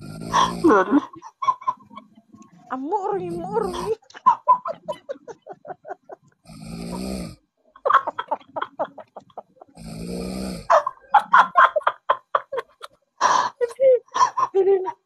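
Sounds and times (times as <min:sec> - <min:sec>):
person snoring: 0:00.0 - 0:01.0, 0:06.5 - 0:07.4, 0:09.8 - 0:10.8.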